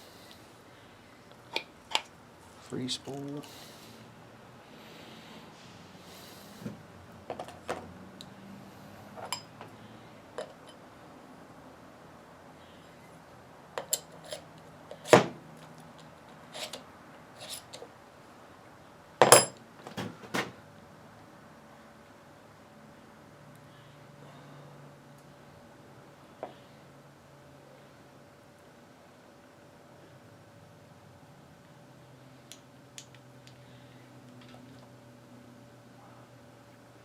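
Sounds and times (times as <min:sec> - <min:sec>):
metallic ring: 0:19.2 - 0:19.6
metal parts clinking and knocking: 0:19.2 - 0:20.6.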